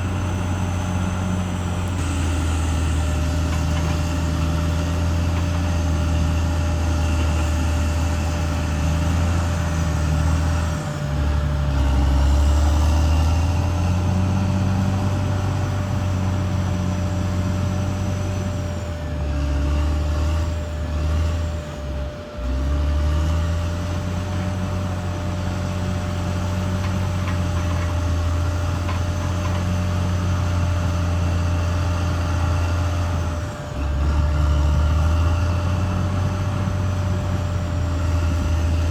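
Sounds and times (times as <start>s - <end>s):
thin whine: 0.0s - 23.0s
bulldozer diesel engine: 0.0s - 38.9s.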